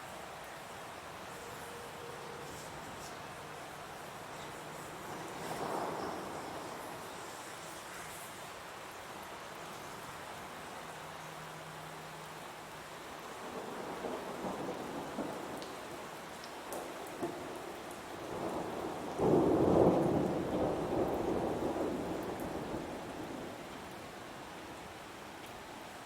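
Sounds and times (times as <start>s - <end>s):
heavy rain falling: 0.0s - 26.0s
thunder rumbling: 4.6s - 7.3s, 13.4s - 16.1s, 16.7s - 24.0s.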